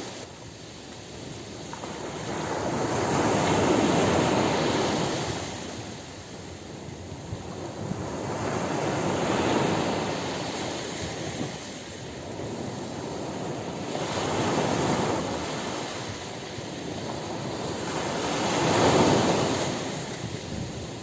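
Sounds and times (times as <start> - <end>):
ocean surf breaking on beach: 0.0 - 21.0.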